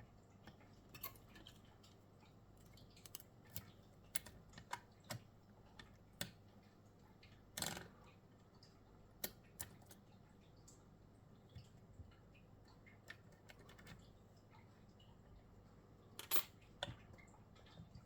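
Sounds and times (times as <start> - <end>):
metallic clicks of lock picking: 16.2 - 16.5.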